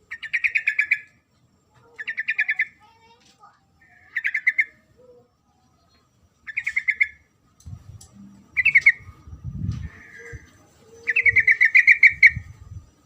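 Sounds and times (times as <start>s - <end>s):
bird chattering calls: 0.1s - 1.1s, 1.9s - 2.9s, 3.8s - 5.2s, 6.4s - 7.3s, 8.6s - 9.1s, 9.7s - 12.5s
low rumbling noise: 7.1s - 13.0s.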